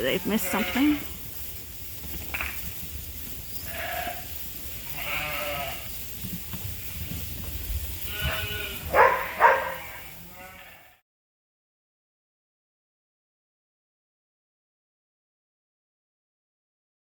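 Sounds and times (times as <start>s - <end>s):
sheep bleating: 0.0s - 1.1s, 3.7s - 6.0s, 8.0s - 11.0s.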